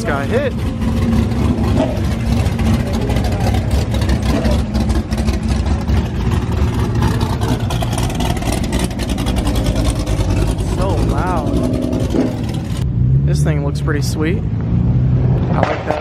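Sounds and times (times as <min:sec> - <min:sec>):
car engines revving: 0:00.0 - 0:16.0.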